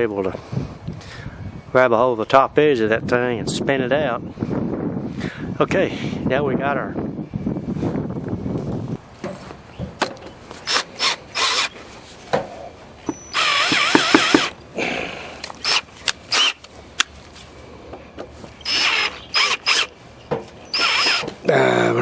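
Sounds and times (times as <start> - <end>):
power drill bursts: 10.6 - 11.8, 13.1 - 14.6, 15.6 - 16.6, 18.6 - 20.0, 20.6 - 21.4.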